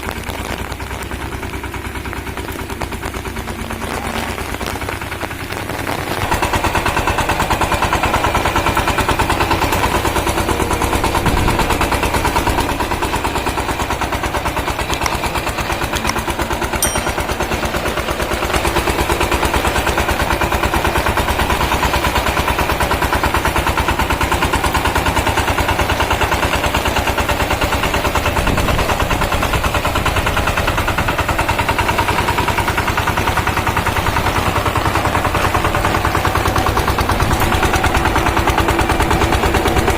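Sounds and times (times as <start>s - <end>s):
diesel tiller engine chugging: 0.0s - 39.9s.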